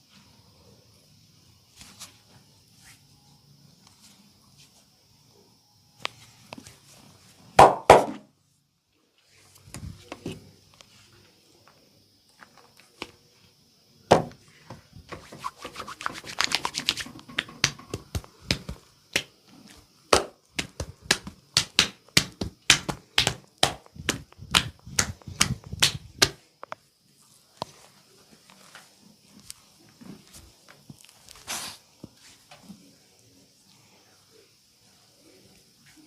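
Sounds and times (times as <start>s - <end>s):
hands slapping a body: 7.6s - 8.2s, 15.1s - 19.3s, 20.1s - 26.4s.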